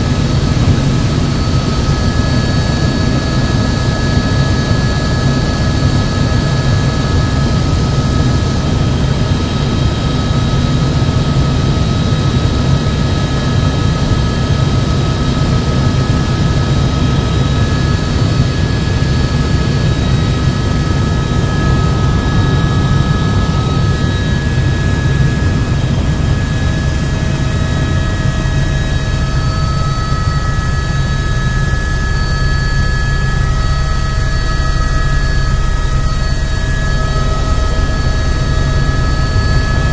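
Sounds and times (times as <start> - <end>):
helicopter engine and rotor rumble: 0.0 - 39.9
high whining tones: 16.8 - 39.9.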